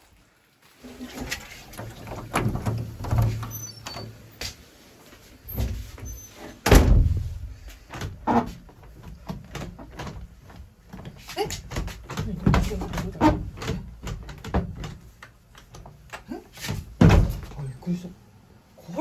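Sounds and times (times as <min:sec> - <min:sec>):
door knocks and rattles: 0:01.8 - 0:04.2, 0:05.5 - 0:17.6
heavy door thud: 0:01.8 - 0:04.2, 0:05.5 - 0:16.0, 0:16.6 - 0:17.6.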